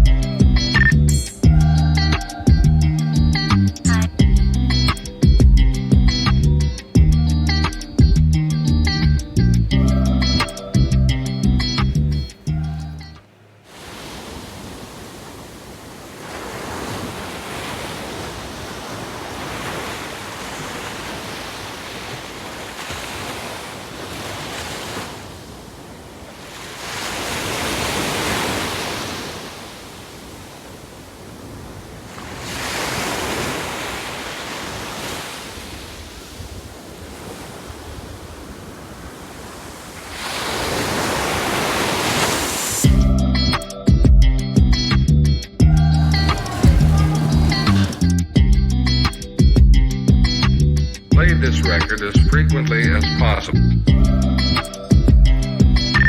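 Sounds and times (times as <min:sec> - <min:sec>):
sea waves breaking on shore: 0:13.2 - 0:43.0, 0:46.1 - 0:48.1.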